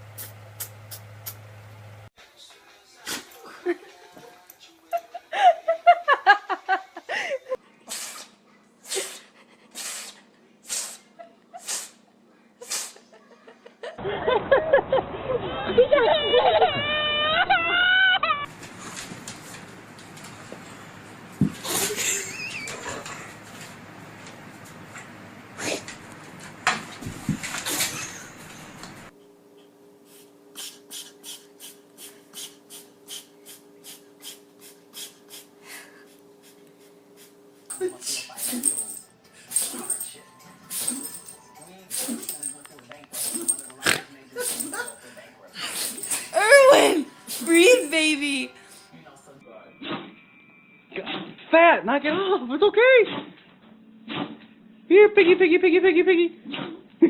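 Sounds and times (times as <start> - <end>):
pet sneezing: 7.9 - 12.0, 12.6 - 13.1, 37.7 - 40.1, 40.7 - 48.0.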